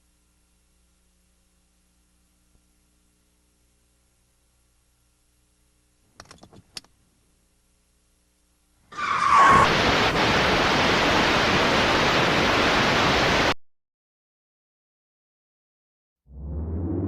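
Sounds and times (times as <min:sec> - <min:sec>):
loud steady hissing noise: 0:09.7 - 0:13.5.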